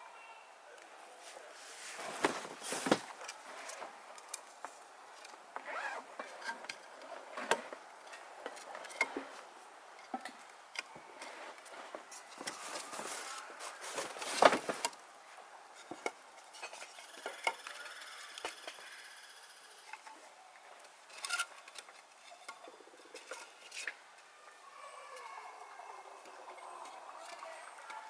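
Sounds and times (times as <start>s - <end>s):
clicks and knocks of objects handled: 1.9s - 15.0s, 15.8s - 17.8s, 19.8s - 24.3s.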